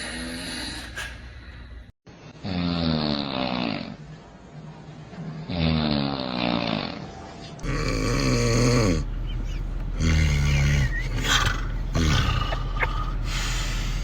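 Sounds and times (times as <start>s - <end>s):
loud growling snoring: 5.5s - 9.1s, 10.0s - 13.4s.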